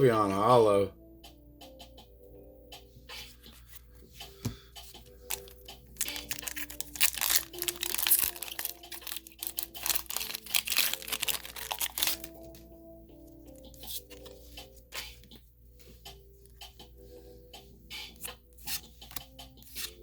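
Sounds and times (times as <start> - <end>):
soft background music: 0.0 - 20.0
foil pack crinkling: 5.3 - 12.5.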